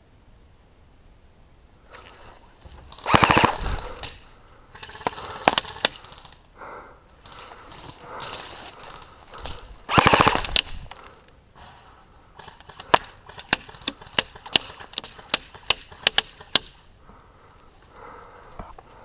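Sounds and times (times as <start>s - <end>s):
airsoft gun automatic burst: 3.0s - 4.2s, 9.9s - 10.8s.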